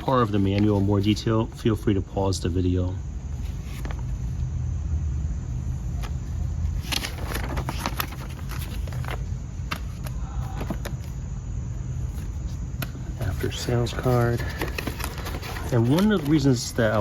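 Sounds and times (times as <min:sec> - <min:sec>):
paper and packaging rustling: 0:00.0 - 0:01.6, 0:03.4 - 0:04.3, 0:06.0 - 0:11.2, 0:12.0 - 0:17.0.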